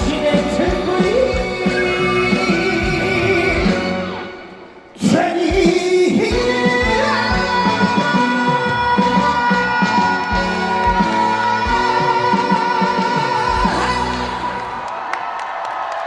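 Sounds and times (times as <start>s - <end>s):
person singing with accompaniment: 0.0s - 14.8s.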